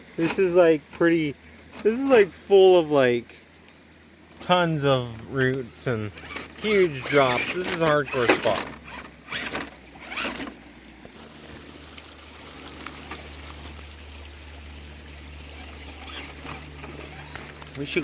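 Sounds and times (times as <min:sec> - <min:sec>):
rc truck motor whirring: 0:00.2 - 0:01.0, 0:06.1 - 0:10.6, 0:15.2 - 0:18.0
short scrapes: 0:06.1 - 0:10.6.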